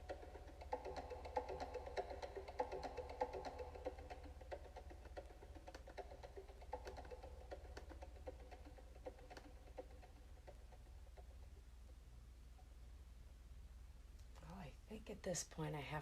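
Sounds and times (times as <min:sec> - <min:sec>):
faint percussive notes: 0:00.0 - 0:12.8.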